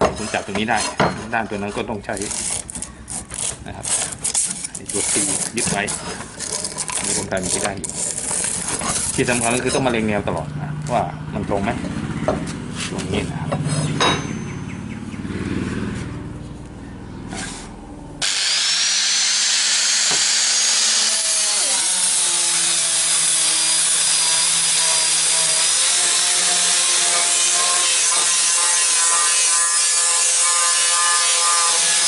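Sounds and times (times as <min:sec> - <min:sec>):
angle grinder grinding steel: 0:00.0 - 0:14.7, 0:18.2 - 0:32.0.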